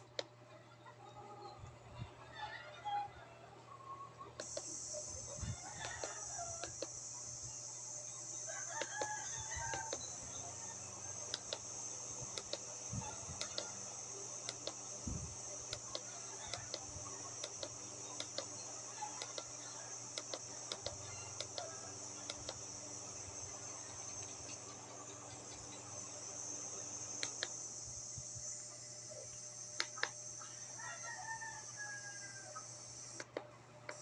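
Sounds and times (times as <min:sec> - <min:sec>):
rooster crowing: 0:02.2 - 0:03.6, 0:05.4 - 0:06.9, 0:08.4 - 0:11.3, 0:15.9 - 0:17.7, 0:30.4 - 0:32.8
high-pitched hiss: 0:04.4 - 0:34.0
light clicks: 0:05.8 - 0:07.0, 0:12.3 - 0:12.6, 0:13.4 - 0:13.8.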